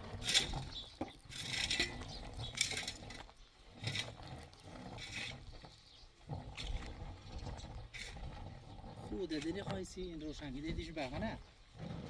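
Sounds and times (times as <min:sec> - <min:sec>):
metal hand tool scraping: 0:00.0 - 0:05.6, 0:06.4 - 0:09.8.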